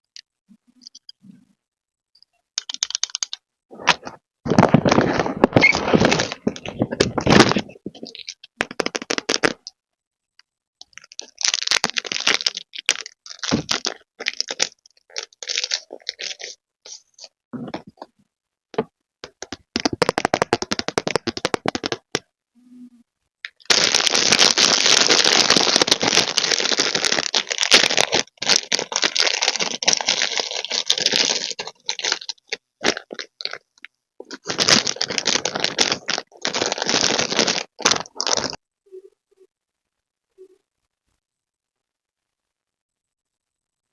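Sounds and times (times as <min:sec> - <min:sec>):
packaging crinkling and scraping: 0:02.8 - 0:09.6, 0:11.0 - 0:18.1, 0:18.8 - 0:22.2, 0:23.5 - 0:38.6.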